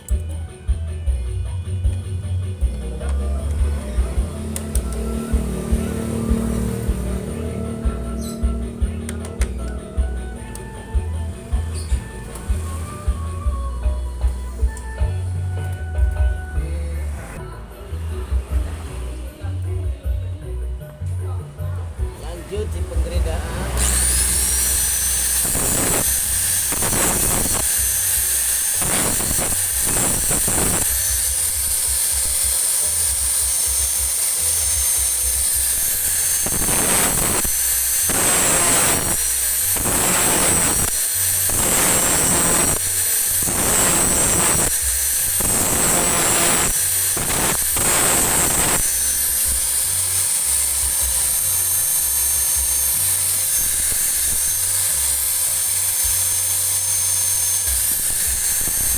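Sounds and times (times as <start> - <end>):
electric grinder grinding steel: 1.9 - 20.5, 21.9 - 58.9.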